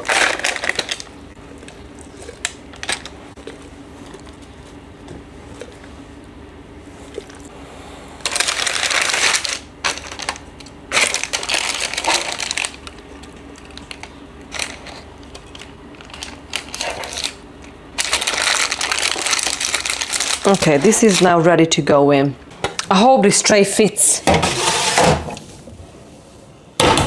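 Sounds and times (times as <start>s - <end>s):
crinkly wrapping rustling: 0.0s - 4.5s, 8.2s - 21.6s.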